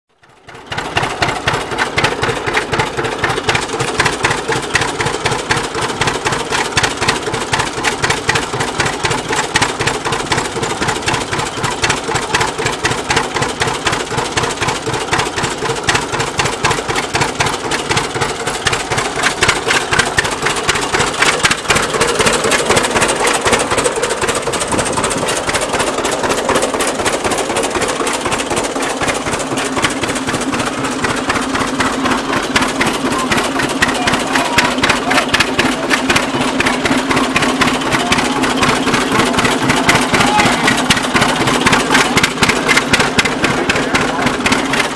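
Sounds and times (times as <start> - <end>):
tractor engine running: 0.1 - 44.9
belted machinery hum: 15.6 - 44.9.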